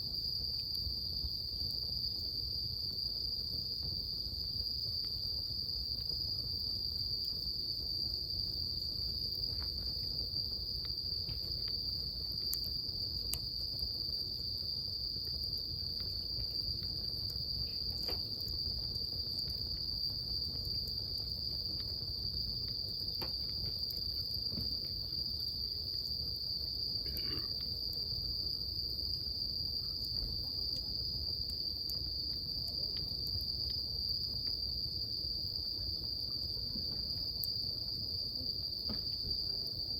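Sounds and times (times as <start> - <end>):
bonfire crackling: 0.0 - 39.9
crickets chirring: 0.0 - 39.9.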